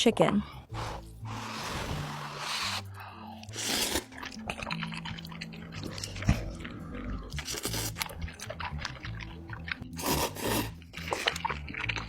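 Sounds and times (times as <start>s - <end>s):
background music: 0.0s - 12.0s
noodles slurping: 0.7s - 12.0s
wet chewing clicks: 3.4s - 12.0s.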